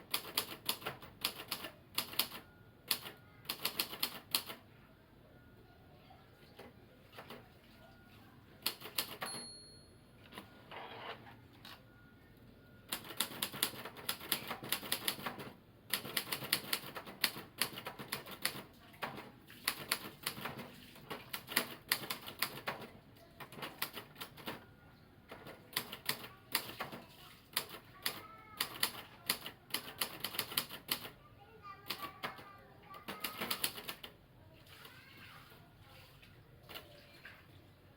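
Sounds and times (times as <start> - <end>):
typewriter carriage return: 0.0 - 4.6, 8.6 - 9.6, 10.2 - 11.8, 12.9 - 24.6, 25.3 - 31.2, 31.9 - 34.2
typewriter key strikes: 8.6 - 9.5, 33.0 - 34.1
typewriter margin bell: 8.6 - 10.5, 12.9 - 15.4, 27.6 - 31.1, 31.9 - 34.1.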